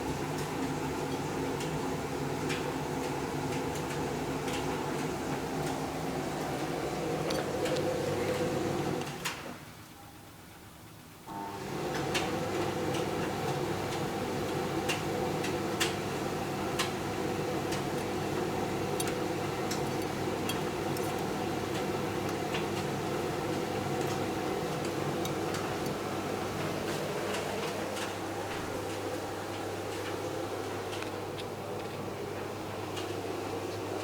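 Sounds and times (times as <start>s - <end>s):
motor hum of machine drum: 11.4s - 31.3s.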